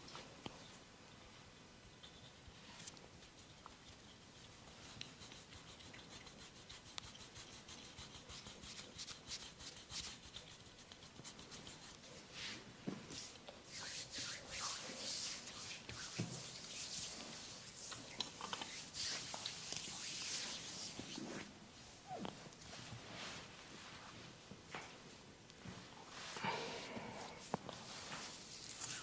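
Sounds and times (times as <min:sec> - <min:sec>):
hands rubbing skin: 0:03.2 - 0:21.6, 0:27.2 - 0:29.0.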